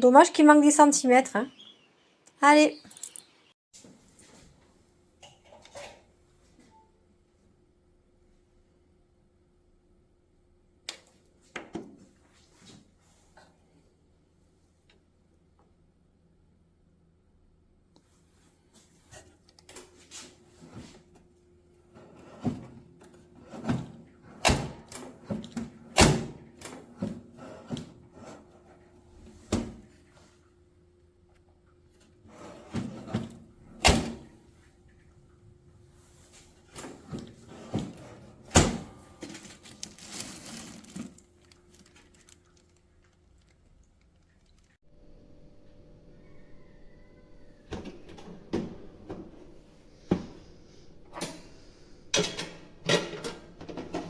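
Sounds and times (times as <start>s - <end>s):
faint steady hum: 38.9s - 53.9s
scraping and rustling: 39.2s - 44.8s.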